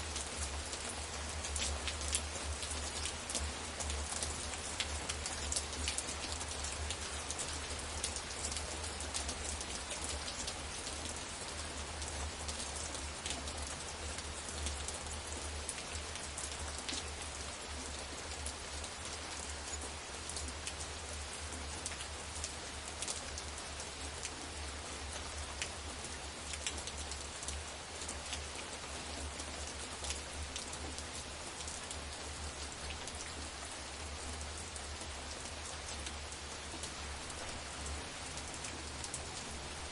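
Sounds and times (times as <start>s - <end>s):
steady rain hiss: 0.0s - 39.9s.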